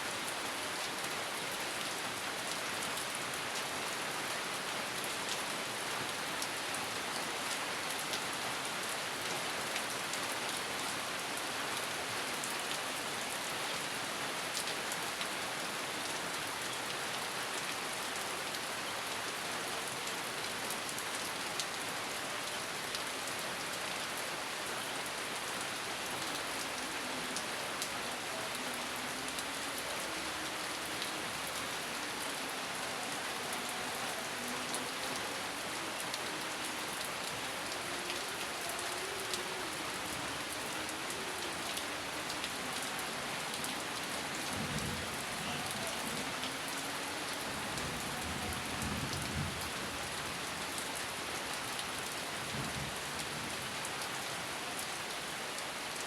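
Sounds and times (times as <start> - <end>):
steady rain hiss: 0.0 - 56.0
raindrops pattering: 26.3 - 51.0.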